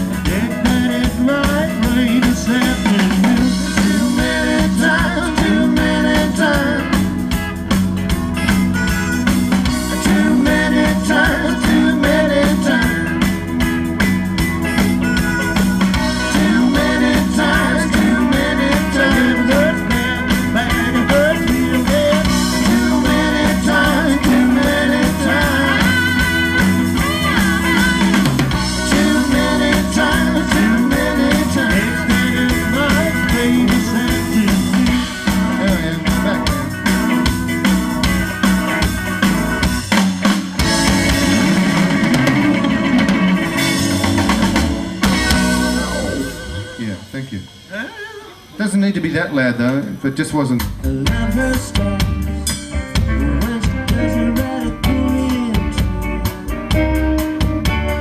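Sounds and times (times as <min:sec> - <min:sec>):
drum kit: 0:00.0 - 0:58.0
guitar: 0:00.0 - 0:58.0
person singing: 0:00.1 - 0:07.2, 0:09.6 - 0:13.6, 0:15.8 - 0:37.2, 0:45.0 - 0:48.6, 0:50.7 - 0:56.4.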